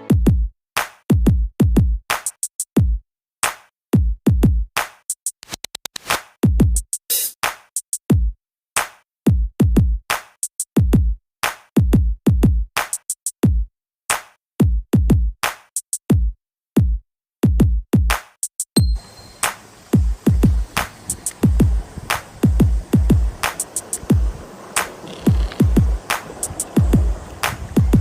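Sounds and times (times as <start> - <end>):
quick drum roll: 18.8 - 28.0
sharp snappy drum hits: 18.8 - 28.0
deep bass kicks: 20.0 - 20.8, 21.4 - 23.4, 25.3 - 26.0, 26.8 - 28.0.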